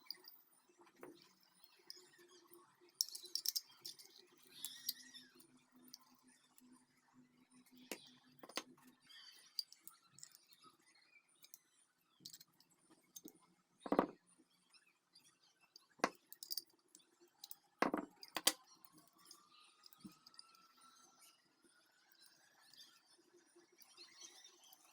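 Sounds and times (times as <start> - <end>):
small metal parts clicking: 3.0 - 5.1, 12.3 - 12.6, 16.0 - 16.7, 17.4 - 20.5.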